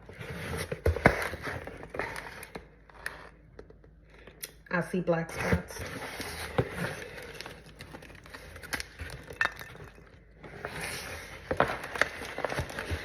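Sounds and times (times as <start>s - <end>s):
packaging rustling and crinkling: 0.0s - 3.3s, 5.8s - 13.0s.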